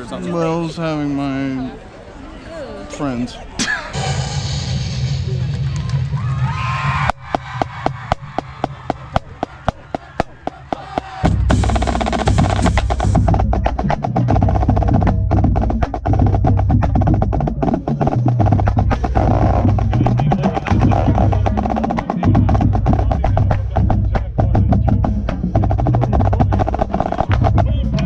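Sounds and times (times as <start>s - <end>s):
booming bass drums: 4.0s - 28.0s
rapid snare drum strokes: 7.0s - 28.0s.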